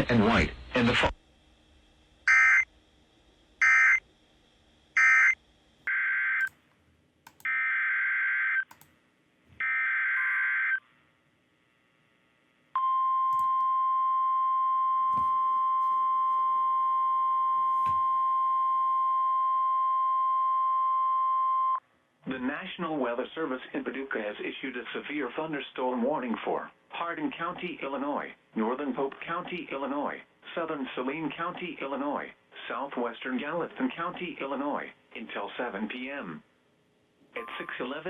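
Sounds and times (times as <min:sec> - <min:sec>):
screeching data tone bursts: 0:02.3 - 0:02.7, 0:03.6 - 0:04.0, 0:05.0 - 0:06.5.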